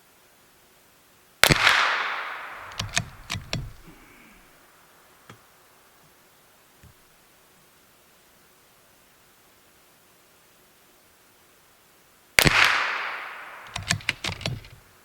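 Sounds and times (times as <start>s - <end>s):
rifle shot with echo: 1.4s - 4.4s, 12.4s - 14.3s
rifle bolt clicks: 2.5s - 3.9s, 13.6s - 14.8s.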